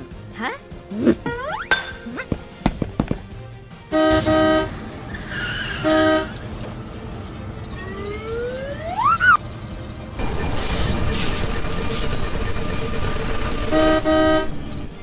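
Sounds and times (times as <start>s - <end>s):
toy vehicle horn blasts: 3.9s - 4.8s, 5.8s - 6.4s, 13.7s - 14.6s
rising whistle-like glide: 7.7s - 9.4s.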